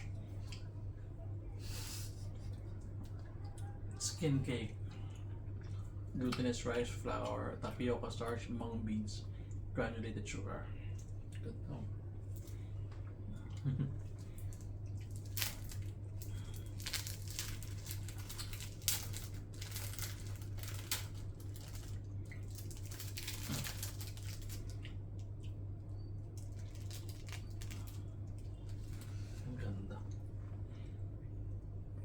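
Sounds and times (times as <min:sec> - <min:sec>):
steady low hum: 0:00.0 - 0:32.0
wrapper crinkling and tearing: 0:14.4 - 0:24.9, 0:26.4 - 0:29.1.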